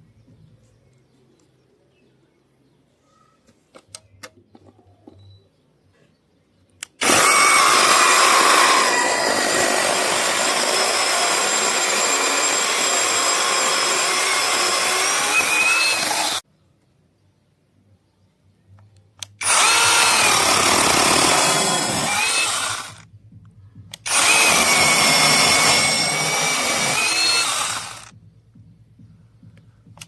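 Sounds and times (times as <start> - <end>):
mini chainsaw whining: 6.8 - 16.4, 19.4 - 23.0, 24.0 - 28.1.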